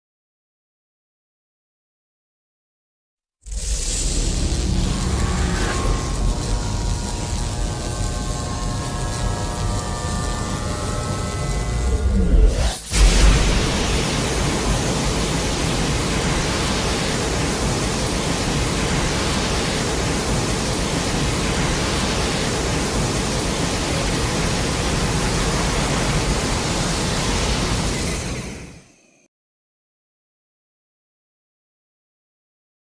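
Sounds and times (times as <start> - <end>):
steady rushing static noise: 3.5 - 28.5.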